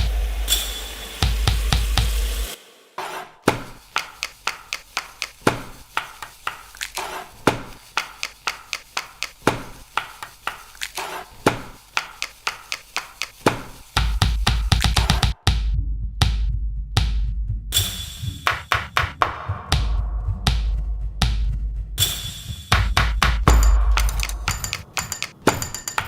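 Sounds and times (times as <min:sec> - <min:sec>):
kitchen utensils tapping: 0:03.1 - 0:15.4, 0:23.0 - 0:26.0.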